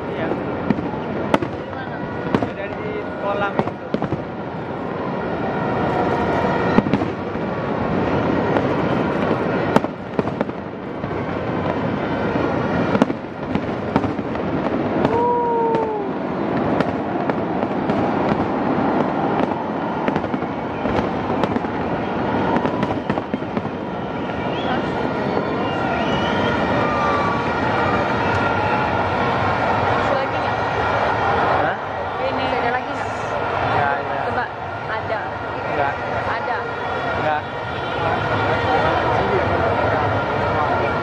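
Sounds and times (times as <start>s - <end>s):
fireworks bangs: 0.0s - 41.0s
steady background din: 0.0s - 41.0s
falling firework whistle: 0.5s - 31.4s.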